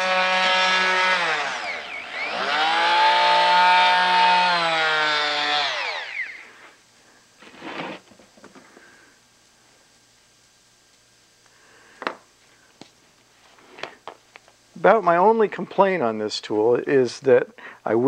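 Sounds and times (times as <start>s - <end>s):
oscillating multi-tool whine: 0.0s - 6.8s.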